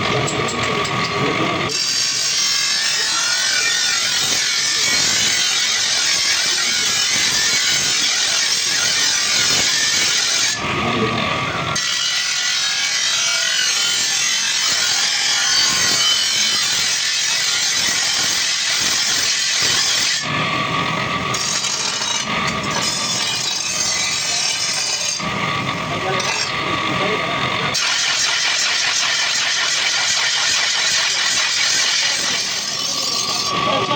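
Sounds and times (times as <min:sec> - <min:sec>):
abrasive rasping on steel blade: 0:21.3 - 0:25.3, 0:27.8 - 0:33.9.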